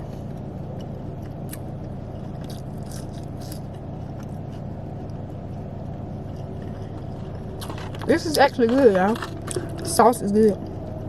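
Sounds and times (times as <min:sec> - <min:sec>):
car idling: 0:00.0 - 0:11.0
faint chewing: 0:00.0 - 0:11.0.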